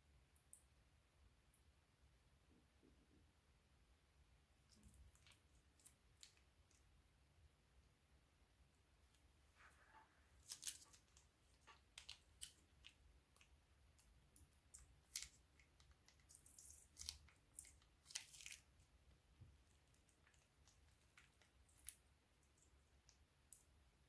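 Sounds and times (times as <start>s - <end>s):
slime clicks and crackles: 10.4s - 18.7s.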